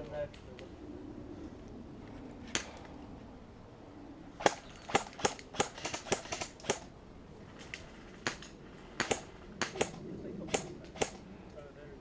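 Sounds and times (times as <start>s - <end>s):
airsoft gun shots: 4.4s - 6.9s, 8.2s - 11.2s.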